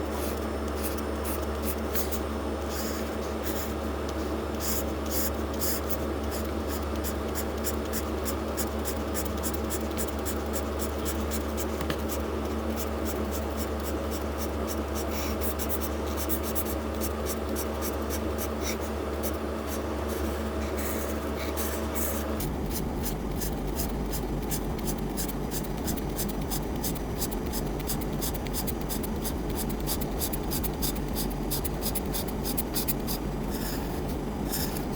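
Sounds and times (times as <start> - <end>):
steady low hum: 0.0 - 34.9
coloring strokes scratching paper: 19.7 - 34.9.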